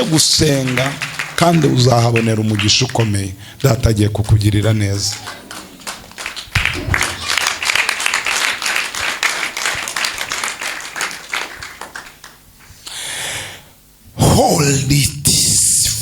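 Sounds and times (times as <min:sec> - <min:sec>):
group of people clapping: 0:00.0 - 0:12.7.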